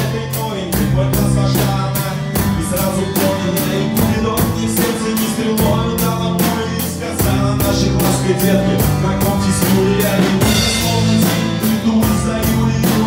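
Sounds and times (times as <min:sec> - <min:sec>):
rock band playing: 0:00.0 - 0:13.0.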